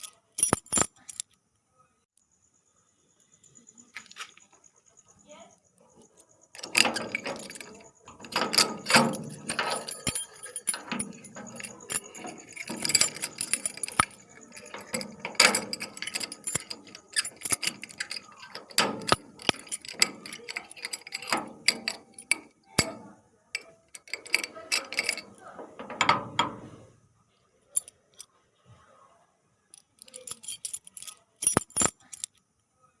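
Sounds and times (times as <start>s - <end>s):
key clicking in a lock: 0.0s - 1.4s, 6.6s - 26.8s, 29.8s - 32.4s
keys jangling on a ring: 0.0s - 1.4s, 6.4s - 26.8s, 27.7s - 28.3s, 29.8s - 32.4s.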